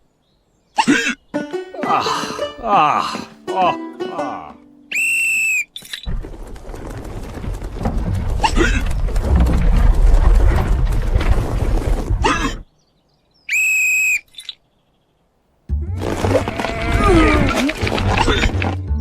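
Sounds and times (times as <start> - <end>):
high whistle-like tone: 4.9 - 5.7.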